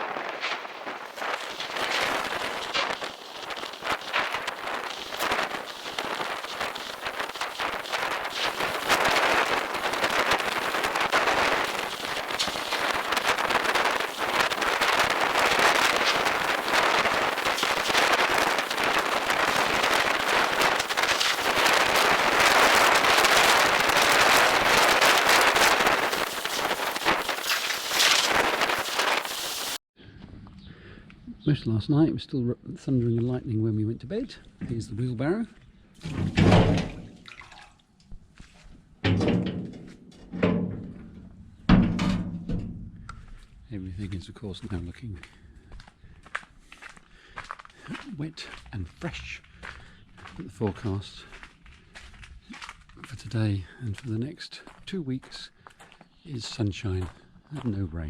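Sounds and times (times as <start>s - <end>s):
heavy rain falling: 0.0s - 29.8s
hollow knocks on metal wheelbarrow: 39.0s - 43.0s.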